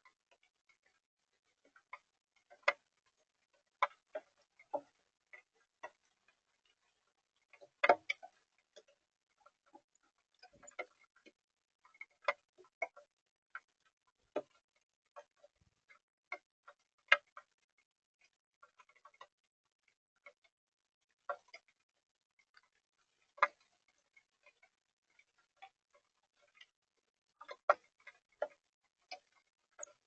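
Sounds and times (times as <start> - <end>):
raindrops tapping on feeder: 1.6 - 17.6, 22.5 - 26.7, 27.4 - 30.0.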